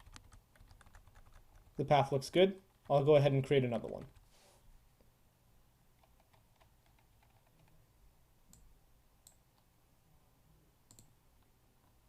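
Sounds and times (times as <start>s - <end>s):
computer clicking: 0.0s - 1.8s, 6.0s - 7.8s, 10.9s - 11.1s
low room hum: 0.0s - 12.0s.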